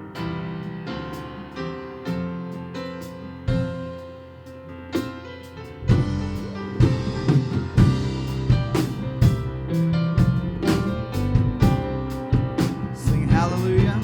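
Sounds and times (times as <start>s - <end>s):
keyboard chords: 0.0s - 14.0s
drum kit beat: 2.9s - 4.1s, 5.0s - 14.0s.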